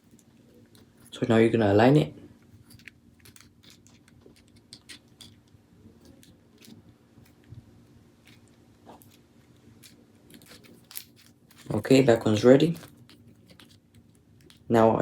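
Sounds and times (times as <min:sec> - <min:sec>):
low steady hum: 0:00.0 - 0:15.0
small metal parts clicking: 0:02.5 - 0:07.5, 0:08.2 - 0:14.7.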